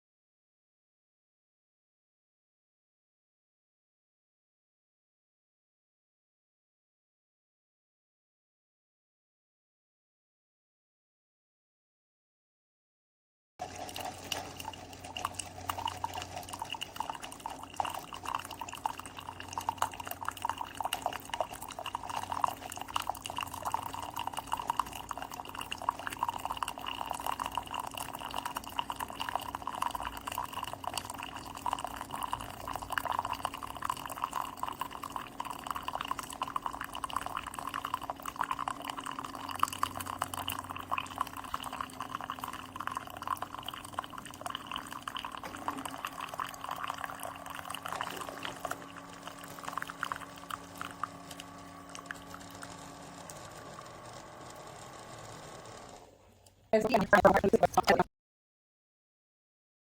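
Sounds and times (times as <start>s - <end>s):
coffee dripping into cup: 13.6s - 53.6s
coffee maker hum: 13.6s - 56.1s.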